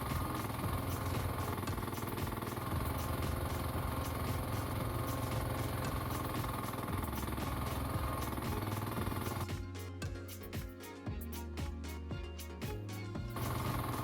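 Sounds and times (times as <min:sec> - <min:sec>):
excavator engine running: 0:00.0 - 0:09.6, 0:13.3 - 0:14.0.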